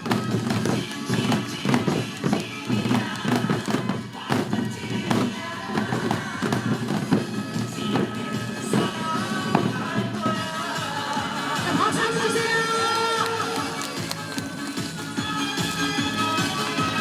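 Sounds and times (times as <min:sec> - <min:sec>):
hourglass drums struck in rhythm: 0:00.0 - 0:17.0
recorded trot backing track: 0:07.0 - 0:17.0.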